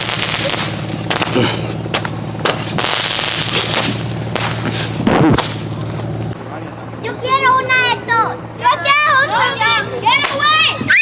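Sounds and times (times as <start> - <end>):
firework crackling burst: 0.0 - 5.8
firework bangs: 0.0 - 6.3.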